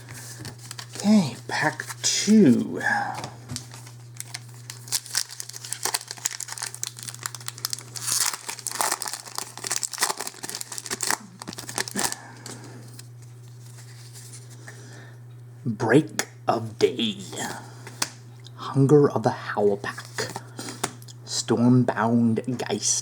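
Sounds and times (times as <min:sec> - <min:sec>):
steady low hum: 0:00.0 - 0:23.0
foil wrapper tearing and crinkling: 0:03.6 - 0:13.0.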